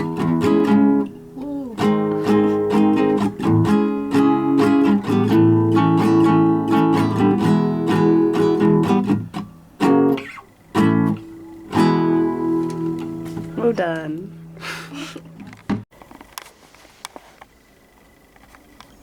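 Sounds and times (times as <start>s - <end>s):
guitar strumming chords: 0.0s - 14.6s.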